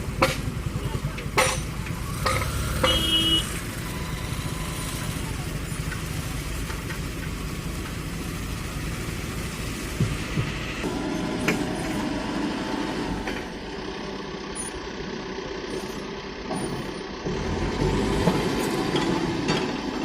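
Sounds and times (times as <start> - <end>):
sharp metallic knocks: 0.0 - 3.4
diesel engine running: 0.0 - 20.0.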